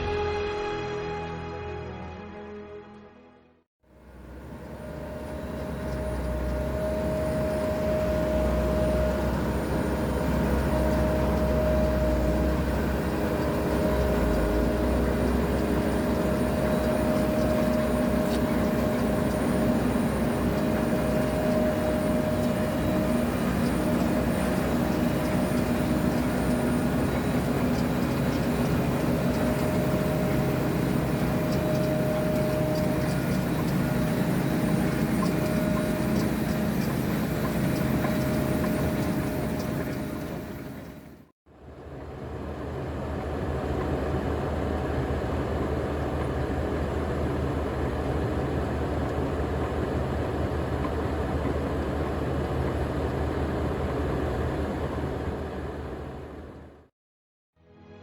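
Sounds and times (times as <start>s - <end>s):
constant whining tone: 3.9s - 41.2s
harvester engine and machinery drone: 3.9s - 56.9s.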